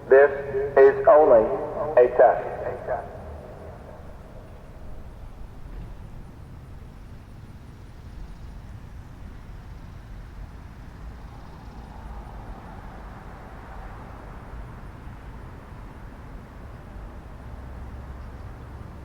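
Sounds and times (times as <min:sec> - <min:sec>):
broad swell of noise: 0:00.0 - 0:05.6
low outdoor rumble: 0:00.0 - 0:07.1.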